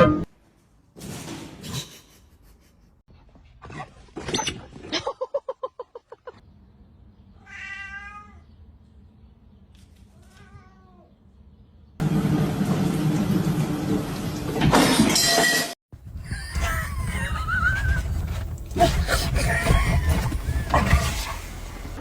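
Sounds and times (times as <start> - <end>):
cat meowing: 7.4 - 8.5, 10.1 - 11.1.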